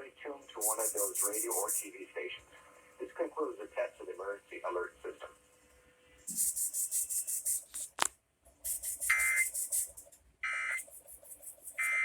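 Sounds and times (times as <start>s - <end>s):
choppy radio hiss: 0.0s - 5.4s
harsh digital buzzes: 0.6s - 1.9s, 8.7s - 10.0s.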